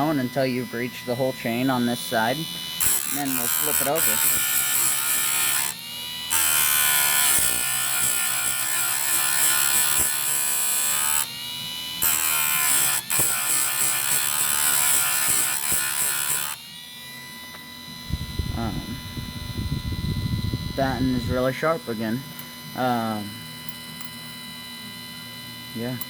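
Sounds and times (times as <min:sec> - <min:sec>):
grinding wheel on chainsaw chain: 0:00.0 - 0:11.3, 0:12.0 - 0:16.6
motor whine: 0:00.0 - 0:26.0.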